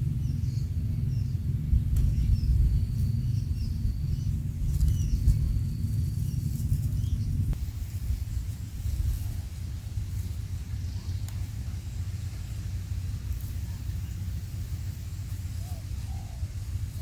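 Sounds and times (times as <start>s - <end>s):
steady low rumble: 0.0s - 17.0s
quail chirping: 0.1s - 7.5s, 13.4s - 17.0s.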